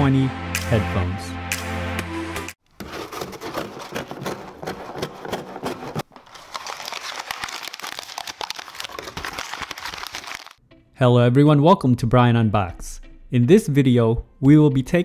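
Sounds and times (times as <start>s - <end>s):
packaging crinkling and rustling: 2.7s - 10.6s.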